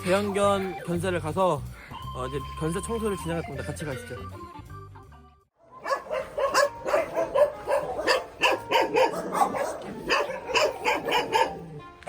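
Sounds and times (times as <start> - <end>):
large dogs barking: 5.7 - 12.0.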